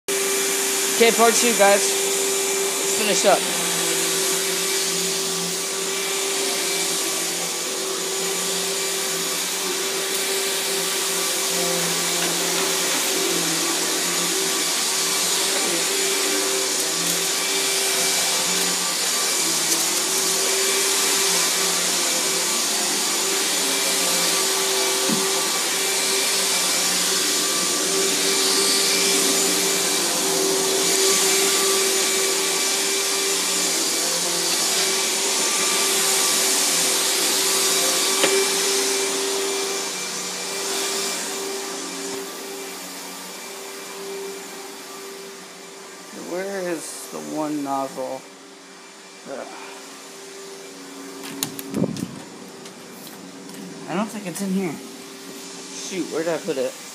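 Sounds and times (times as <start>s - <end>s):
vacuum cleaner running: 0.1s - 56.9s.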